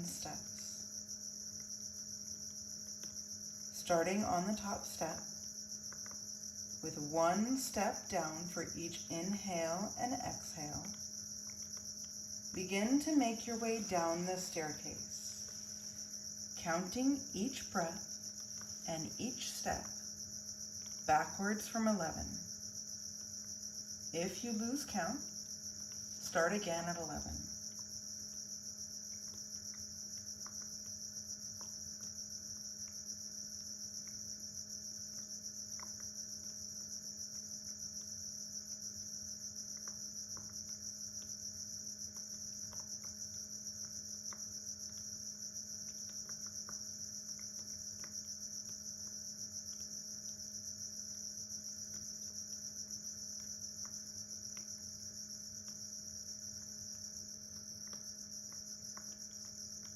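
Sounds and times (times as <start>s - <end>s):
crickets chirping: 0.0s - 59.9s
faint ticks: 5.1s - 6.3s, 10.7s - 12.7s, 19.8s - 21.1s, 27.2s - 59.9s.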